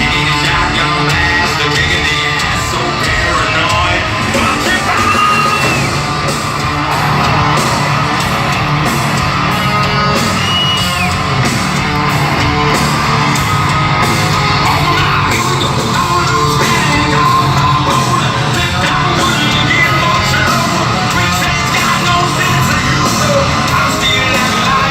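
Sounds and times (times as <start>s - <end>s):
person singing and yelling: 0.0s - 6.1s, 14.5s - 24.9s
live rock band playing: 0.0s - 24.9s.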